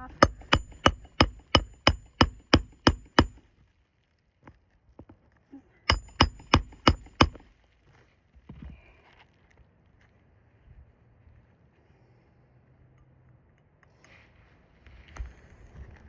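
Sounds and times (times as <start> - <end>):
hammer striking roof: 0.0 - 3.4, 5.9 - 7.5.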